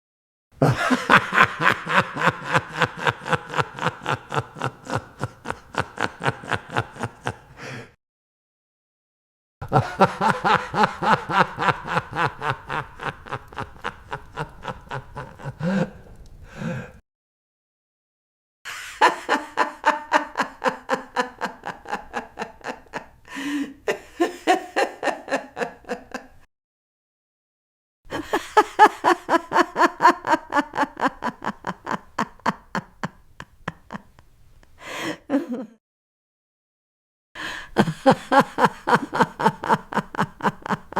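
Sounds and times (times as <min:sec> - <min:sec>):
person laughing: 0:00.6 - 0:07.9, 0:09.6 - 0:16.9, 0:18.7 - 0:26.3, 0:28.1 - 0:34.2, 0:35.0 - 0:35.8, 0:37.7 - 0:40.9.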